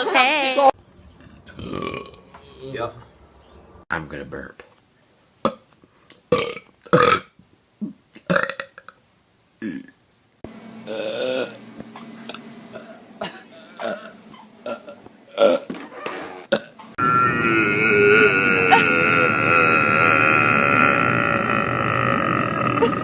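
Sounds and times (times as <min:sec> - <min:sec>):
background noise: 0:00.0 - 0:10.4
person burping loudly: 0:00.8 - 0:03.8, 0:06.3 - 0:07.3, 0:10.8 - 0:11.6, 0:16.5 - 0:23.0.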